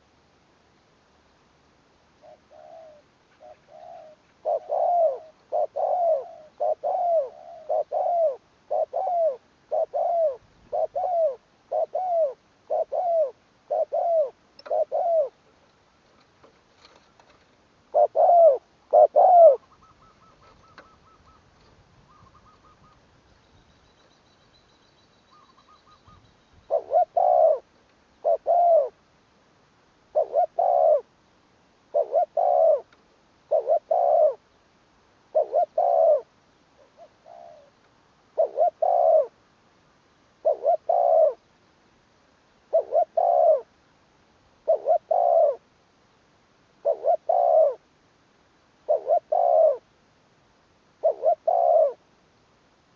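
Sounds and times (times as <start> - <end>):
dove cooing: 2.2 - 15.5, 16.8 - 23.0, 25.3 - 29.0, 30.1 - 31.1, 31.9 - 34.4, 35.3 - 39.4, 40.4 - 41.5, 42.7 - 43.7, 44.6 - 45.6, 46.8 - 47.9, 48.8 - 49.9, 51.0 - 52.0.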